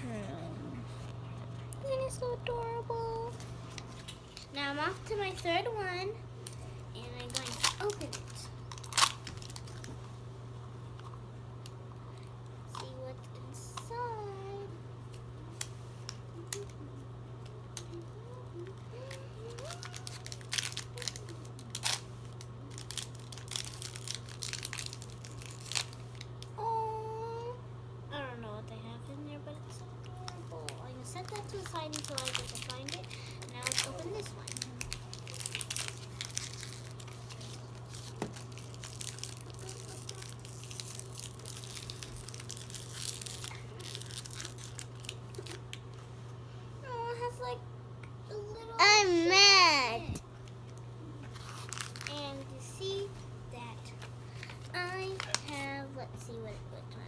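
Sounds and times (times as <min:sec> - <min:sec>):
steady low hum: 0:00.0 - 0:57.0
plastic wrapper crinkling and tearing: 0:06.4 - 0:10.0, 0:17.8 - 0:26.5, 0:30.0 - 0:46.0, 0:51.3 - 0:53.1, 0:54.0 - 0:55.7.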